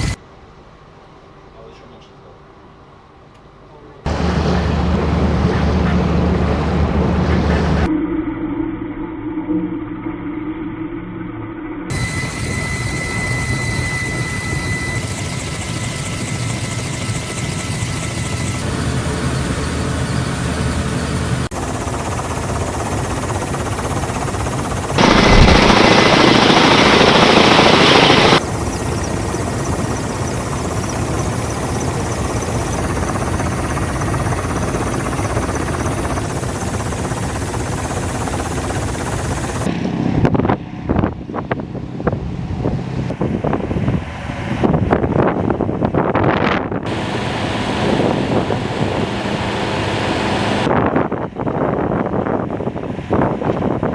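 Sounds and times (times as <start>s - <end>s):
rotor-like engine noise: 4.0s - 8.0s, 10.3s - 53.9s
loud rushing roar: 4.1s - 11.9s, 24.8s - 28.5s, 46.2s - 50.8s.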